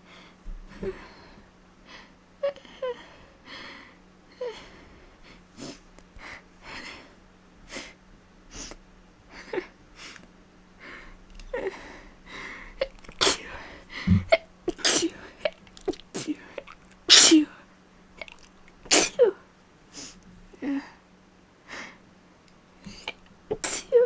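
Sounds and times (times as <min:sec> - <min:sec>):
woman sneezing rapidly: 0:13.2 - 0:13.5, 0:14.1 - 0:15.2, 0:17.1 - 0:17.6, 0:18.9 - 0:19.4, 0:23.0 - 0:24.0.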